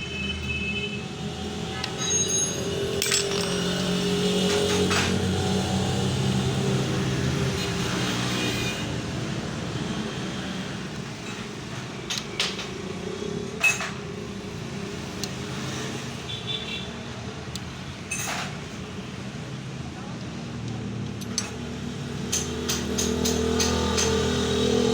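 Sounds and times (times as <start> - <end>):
hand tools clicking on metal: 3.0 - 5.1, 20.2 - 21.6.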